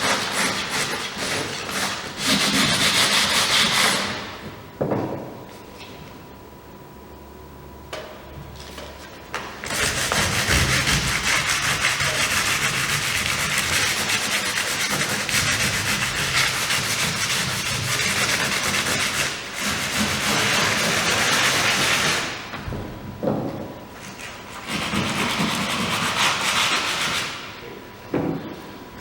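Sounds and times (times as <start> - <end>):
sandpaper rasping on fibreglass: 0.0 - 4.1, 9.7 - 22.4, 24.1 - 27.4.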